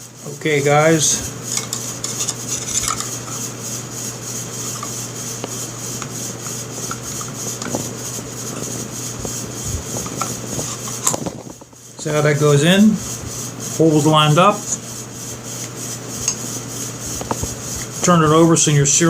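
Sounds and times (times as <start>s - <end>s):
steady low hum: 0.0s - 19.0s
metal parts rubbing and scraping: 1.0s - 12.5s, 15.6s - 18.1s.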